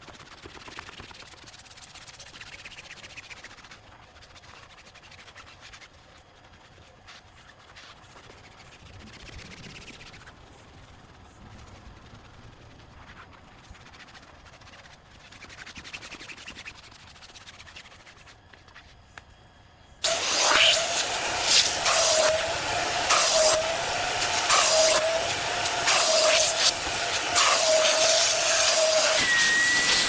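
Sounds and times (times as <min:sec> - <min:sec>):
vacuum cleaner running: 0:20.0 - 0:30.0.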